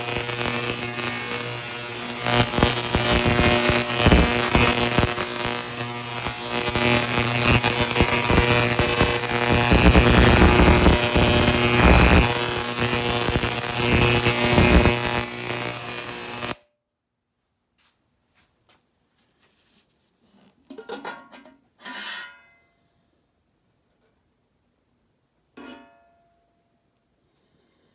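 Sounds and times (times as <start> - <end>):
ultrasonic cleaner buzzing hum: 0.0 - 16.6.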